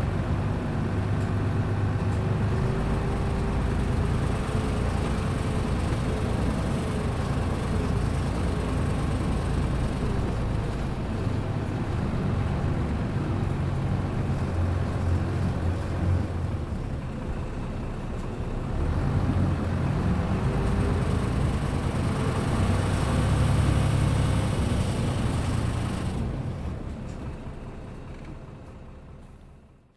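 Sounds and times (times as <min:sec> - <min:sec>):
tyre and road noise: 0:00.0 - 0:29.7
bus engine drone: 0:00.0 - 0:29.9.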